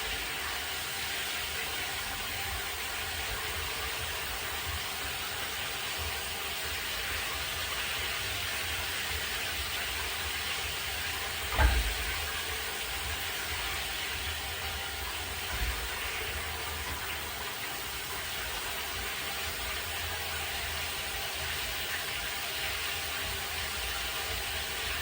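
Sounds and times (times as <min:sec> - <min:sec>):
steady rain hiss: 0:00.0 - 0:25.0
short low thump: 0:11.5 - 0:12.3.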